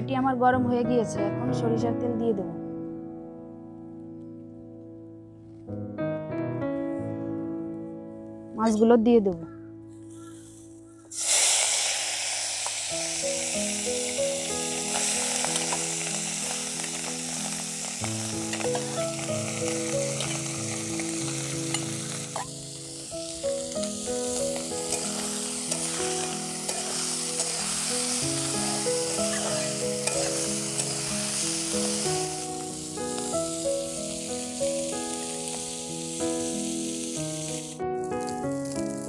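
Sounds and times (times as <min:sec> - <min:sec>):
background music: 0:00.0 - 0:12.0, 0:12.8 - 0:39.0
fish sizzling in hot oil: 0:10.3 - 0:39.0.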